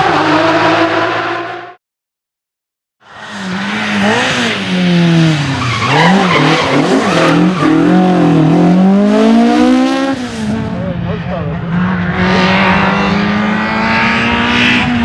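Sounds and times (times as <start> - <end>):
rally car engine revving: 0.0 - 1.8, 3.0 - 15.0.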